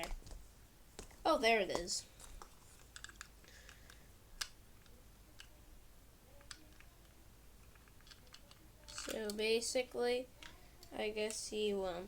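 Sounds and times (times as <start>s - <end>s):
plastic toy parts clicking: 2.8s - 5.6s, 6.4s - 9.4s.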